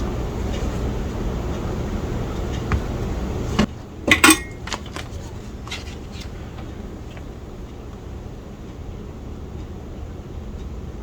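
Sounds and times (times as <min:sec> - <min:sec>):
metal tools clinking on workbench: 0:04.1 - 0:04.7.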